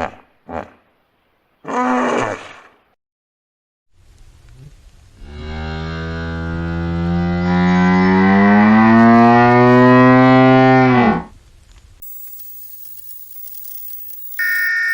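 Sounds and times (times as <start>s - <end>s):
low moo-like animal call: 5.2s - 11.3s.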